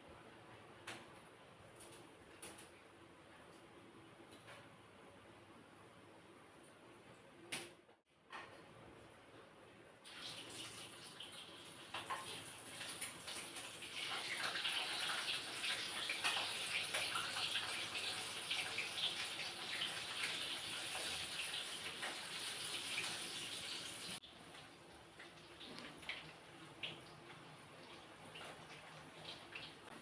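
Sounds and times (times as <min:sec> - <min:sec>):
water running from a tap: 0:10.1 - 0:24.2.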